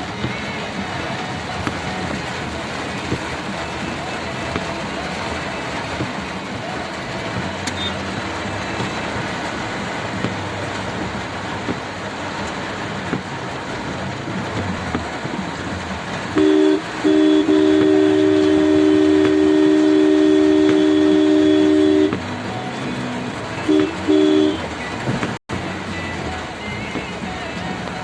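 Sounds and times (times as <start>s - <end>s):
rain hissing: 0.0s - 28.0s
street traffic: 0.0s - 28.0s
loud multi-tone horn blasts: 16.2s - 22.3s, 23.6s - 25.4s.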